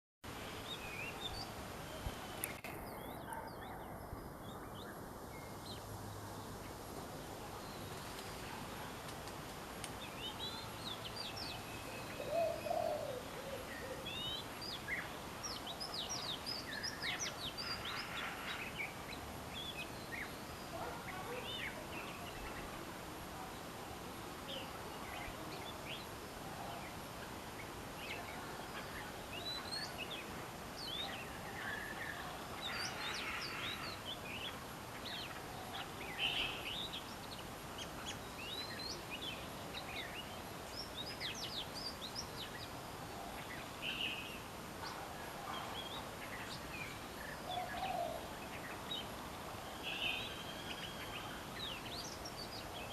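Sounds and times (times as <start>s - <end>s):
bird singing whistled notes: 49.7s - 52.9s.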